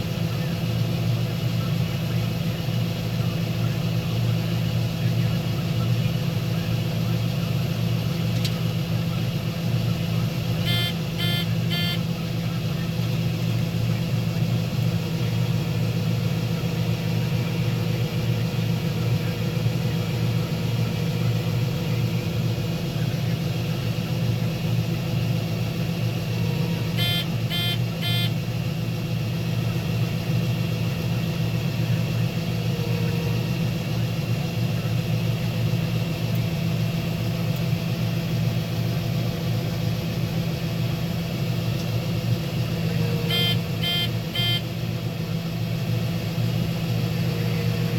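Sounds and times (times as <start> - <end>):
combine harvester drone: 0.0 - 47.9
short electronic beeps: 10.6 - 12.1, 27.0 - 28.4, 43.3 - 44.7.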